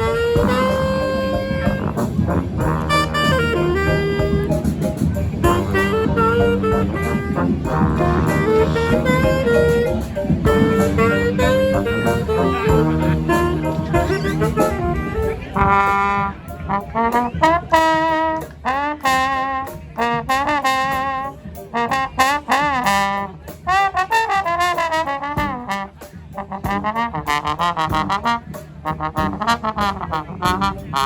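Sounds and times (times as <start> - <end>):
brass band playing: 0.0 - 31.0
drums: 0.0 - 31.0
horn with sliding notes: 0.0 - 31.0.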